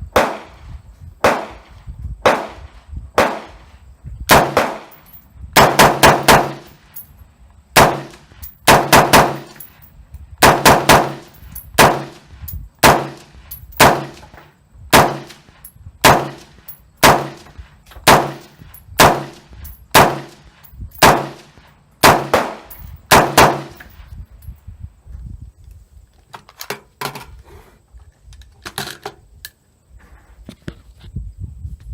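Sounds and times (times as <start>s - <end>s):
rifle shots with echo: 0.1s - 0.6s, 1.2s - 3.6s, 4.3s - 5.0s, 5.6s - 6.8s, 7.8s - 9.6s, 10.4s - 14.3s, 14.9s - 20.4s, 21.0s - 23.8s.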